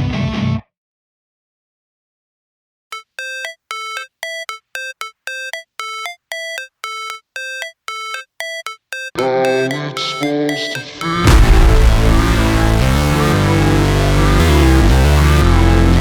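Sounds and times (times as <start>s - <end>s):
bright synth melody: 3.0s - 13.4s
music with bass: 11.2s - 16.0s.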